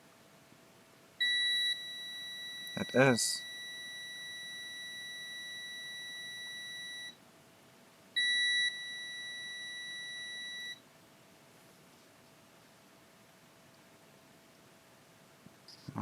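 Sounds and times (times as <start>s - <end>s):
multimeter continuity beep: 1.2s - 7.2s, 8.2s - 10.8s.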